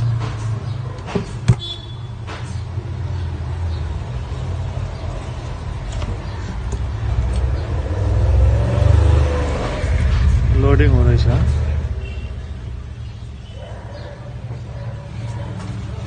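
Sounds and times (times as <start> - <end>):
low rumble: 7.0 - 12.0.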